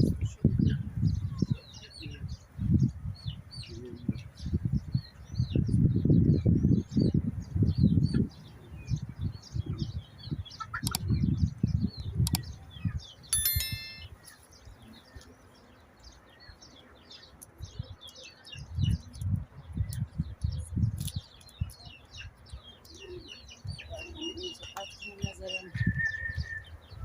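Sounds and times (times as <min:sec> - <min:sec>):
small birds chirping: 0:00.0 - 0:27.0
ringing metallic clink: 0:13.4 - 0:14.2.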